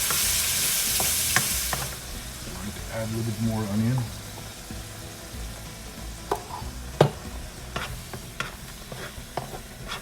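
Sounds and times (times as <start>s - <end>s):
paste frying in oil: 0.0s - 10.0s
spoon knocking against pan: 6.3s - 9.6s.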